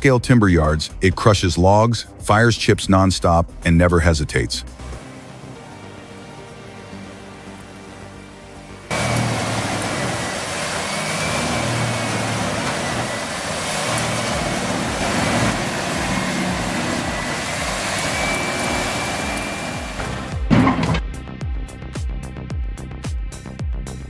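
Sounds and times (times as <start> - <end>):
wood chipper grinding: 8.9 - 21.0.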